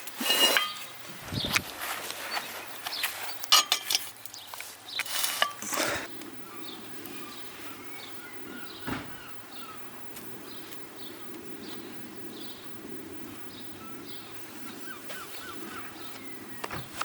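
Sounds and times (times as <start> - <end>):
metal tools clinking and knocking: 0.1 - 0.9, 3.4 - 4.2
faint bird chirps: 6.1 - 17.0.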